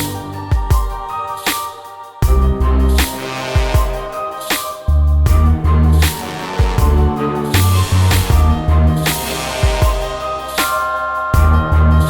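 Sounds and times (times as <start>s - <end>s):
electronic music with steady beat: 0.0s - 12.0s
heavy bass line: 2.2s - 4.1s, 4.9s - 12.0s.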